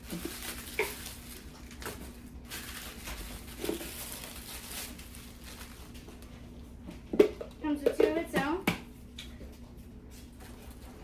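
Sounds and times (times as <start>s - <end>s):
plastic containers rustling: 0.0s - 8.5s.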